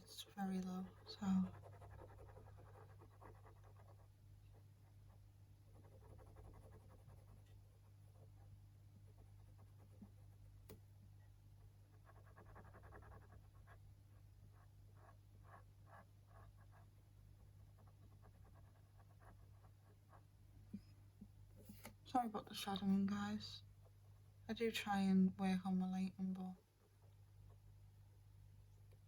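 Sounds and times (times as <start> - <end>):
pen scribbling on paper: 0.1 - 4.2, 5.1 - 7.4, 11.8 - 13.8, 14.5 - 20.3.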